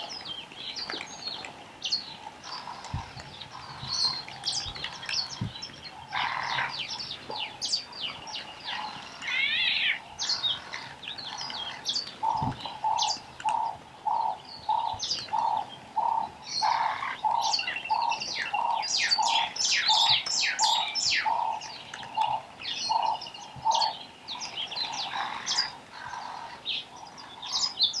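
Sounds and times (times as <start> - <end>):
parrots screeching and chirping: 8.7 - 10.0.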